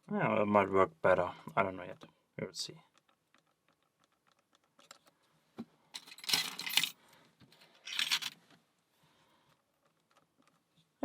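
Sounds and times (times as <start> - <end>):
metallic jingle of tools and lock: 6.0 - 7.0, 7.8 - 8.4.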